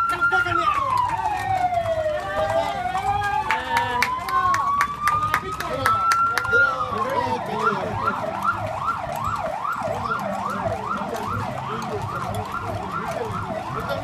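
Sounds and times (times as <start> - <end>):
electronic siren yelping: 0.0 - 14.0.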